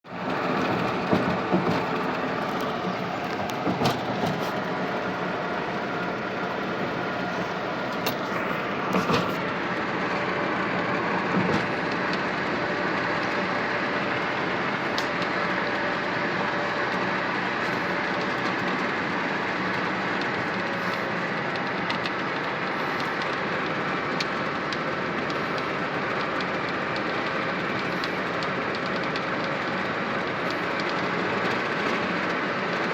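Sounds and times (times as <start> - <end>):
truck engine and road noise: 0.0 - 32.9
knocks and rattles: 0.4 - 4.8.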